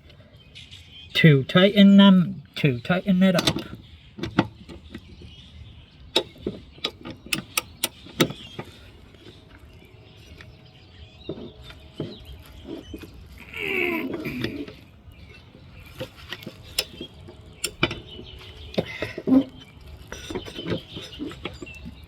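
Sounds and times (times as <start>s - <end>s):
torque wrench clicking: 6.2s - 8.4s, 16.8s - 17.0s, 17.6s - 17.8s.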